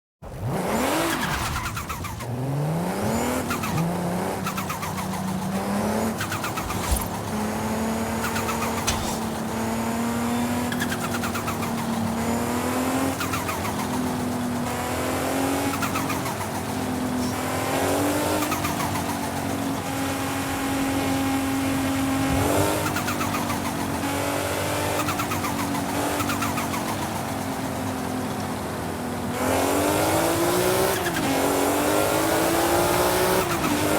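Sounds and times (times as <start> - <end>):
turbocharger fluttering whine: 0.3 - 33.9
falling chirps: 6.2 - 9.6.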